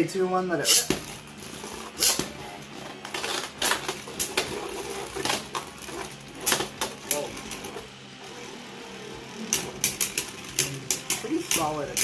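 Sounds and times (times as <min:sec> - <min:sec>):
steady hum: 0:00.0 - 0:12.0
spinning tops clashing: 0:09.4 - 0:12.0.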